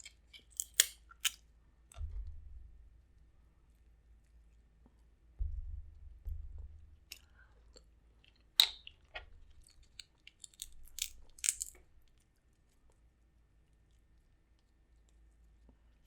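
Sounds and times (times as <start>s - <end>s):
crab shell cracking: 0.0s - 1.4s, 9.6s - 11.9s
low thuds: 2.0s - 3.2s, 5.3s - 7.2s
wet chewing: 7.1s - 12.9s.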